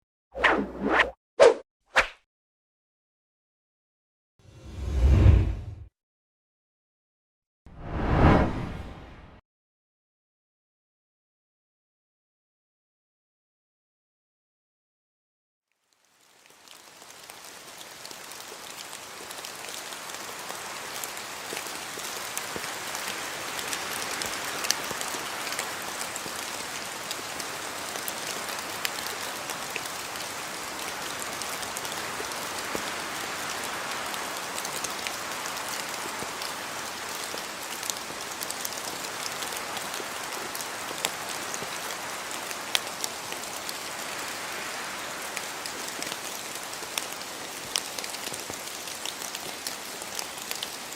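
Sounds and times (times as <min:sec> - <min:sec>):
rain falling on a surface: 0:15.7 - 0:50.9.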